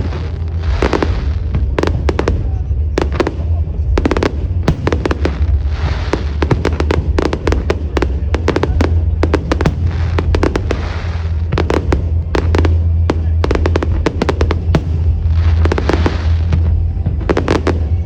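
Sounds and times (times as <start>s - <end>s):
fireworks bangs and crackling: 0.0s - 18.0s
low rumble: 0.0s - 18.0s.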